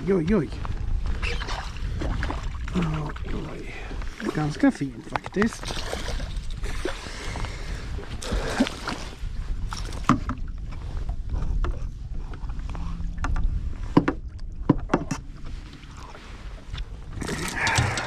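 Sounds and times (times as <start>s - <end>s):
wind rumble on microphone: 0.0s - 18.0s
clicks and knocks from handling: 17.3s - 18.0s.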